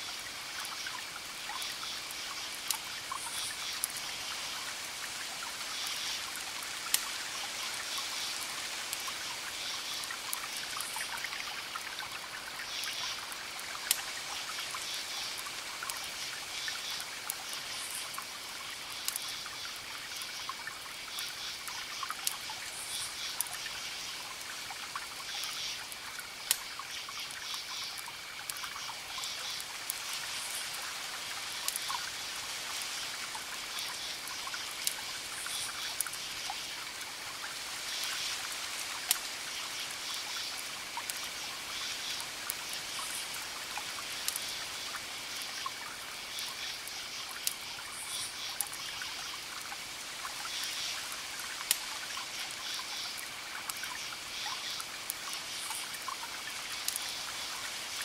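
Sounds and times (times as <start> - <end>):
wood fire crackling: 5.8 - 7.2, 8.2 - 43.4, 44.2 - 47.7, 51.4 - 52.6, 56.7 - 57.2.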